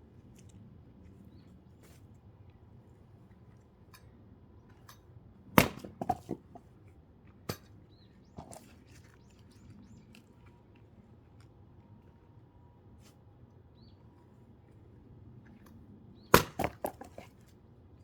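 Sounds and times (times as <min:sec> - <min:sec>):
axe splitting log: 0:05.6 - 0:06.6, 0:16.3 - 0:17.2.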